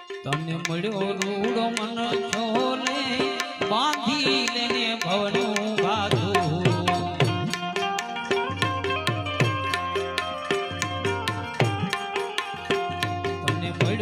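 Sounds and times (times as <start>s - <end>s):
tabla beat: 0.0s - 14.0s
ornamented melody: 5.8s - 14.0s.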